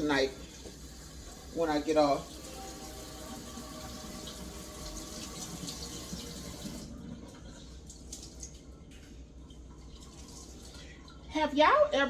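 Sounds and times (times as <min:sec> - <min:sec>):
water running from a tap: 0:00.0 - 0:12.0.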